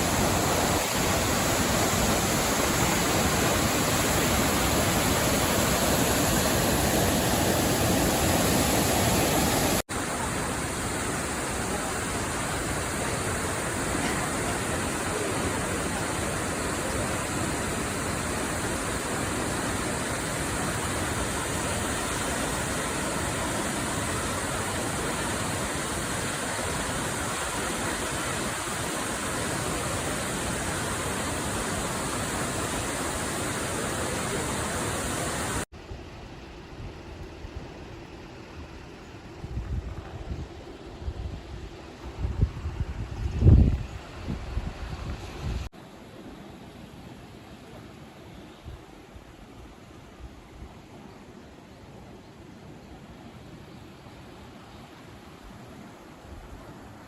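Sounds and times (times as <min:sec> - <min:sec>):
waterfall rushing: 0:00.0 - 0:35.7.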